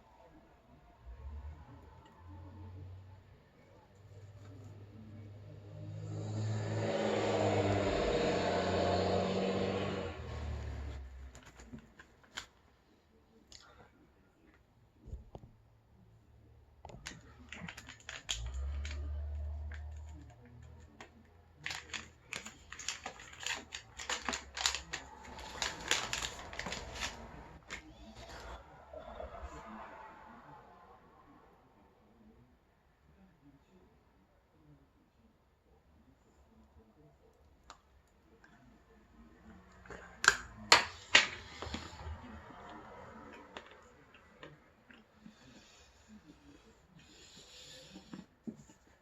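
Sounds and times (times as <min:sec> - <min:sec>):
chocolate bar crunching: 0:17.0 - 0:21.0, 0:21.6 - 0:27.8.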